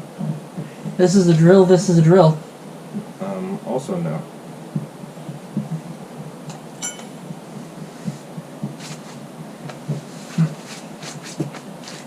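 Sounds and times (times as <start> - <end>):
metallic clink: 6.5 - 7.2.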